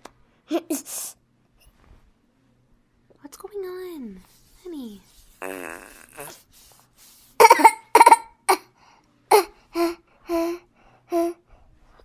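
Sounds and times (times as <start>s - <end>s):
child cough-like vocal bursts: 7.4s - 8.7s.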